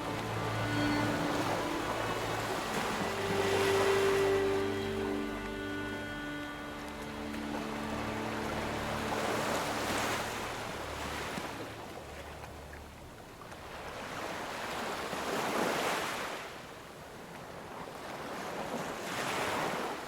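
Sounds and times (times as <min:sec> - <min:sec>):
ocean waves breaking on shore: 0:00.0 - 0:20.0.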